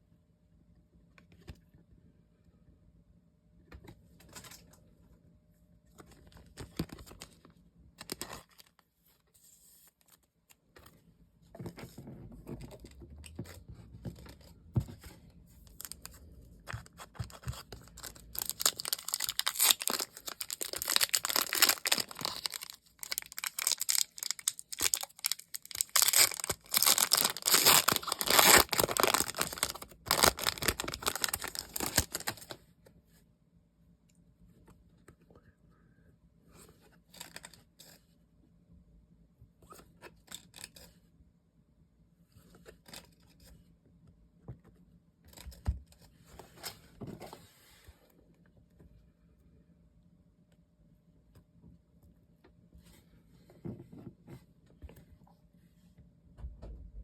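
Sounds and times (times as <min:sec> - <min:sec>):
packaging tearing and crinkling: 0:17.2 - 0:32.5.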